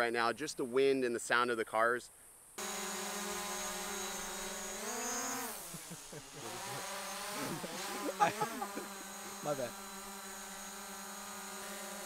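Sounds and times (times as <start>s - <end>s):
drone propellers whining: 2.6s - 12.0s.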